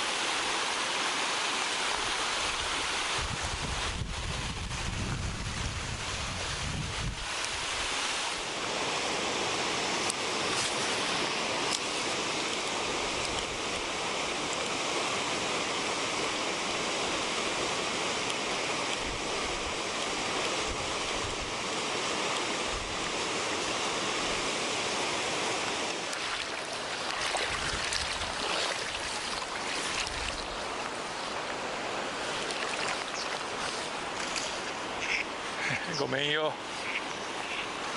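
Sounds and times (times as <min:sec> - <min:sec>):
stream water rushing: 0:00.0 - 0:37.9.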